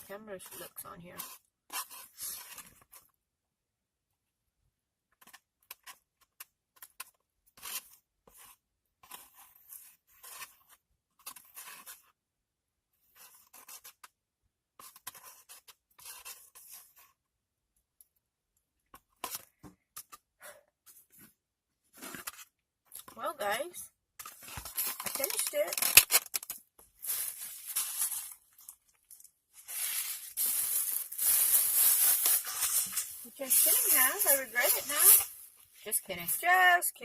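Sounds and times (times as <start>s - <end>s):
utensil scraping container: 24.2s - 26.4s, 29.6s - 36.5s.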